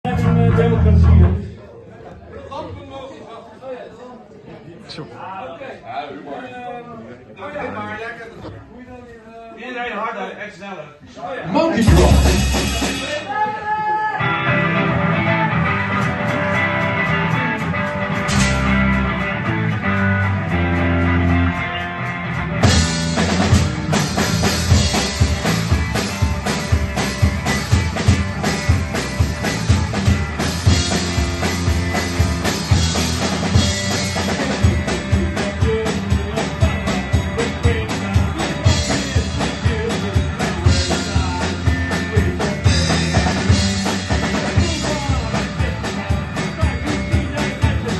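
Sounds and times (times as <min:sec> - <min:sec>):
live band sustained chords: 0:00.1 - 0:01.6, 0:11.7 - 0:13.3, 0:14.2 - 0:47.9
drum kit driving beat: 0:11.6 - 0:13.6, 0:14.5 - 0:47.9.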